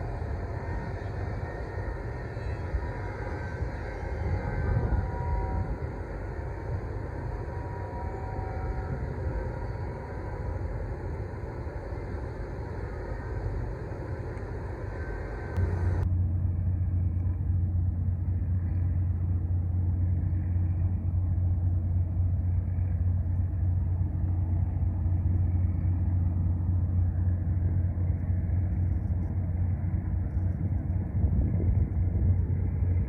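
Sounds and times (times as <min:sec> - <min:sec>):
broad rushing noise: 0:00.0 - 0:16.0
ship engine droning: 0:00.0 - 0:33.0.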